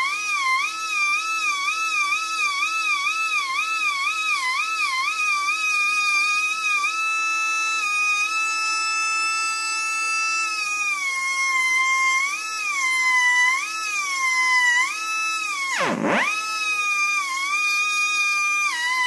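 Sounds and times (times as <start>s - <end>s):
rotary tool sanding drum whining: 9.2s - 19.0s.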